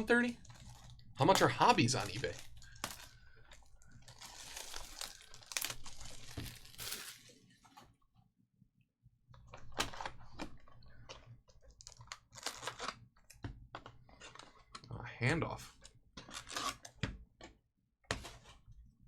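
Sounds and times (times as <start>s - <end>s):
wrappers crinkling and tearing: 0.4s - 7.7s, 11.7s - 13.0s.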